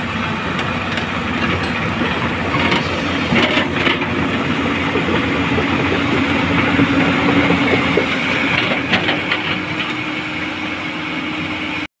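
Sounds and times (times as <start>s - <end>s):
diesel engine running: 0.0s - 11.9s.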